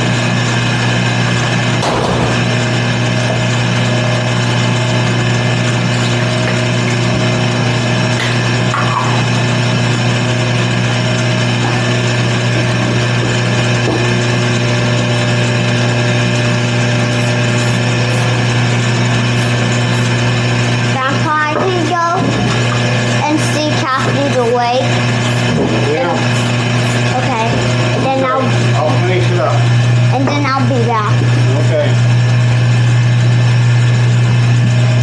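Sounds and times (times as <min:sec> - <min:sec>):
wood lathe motor hum: 0:00.0 - 0:35.0.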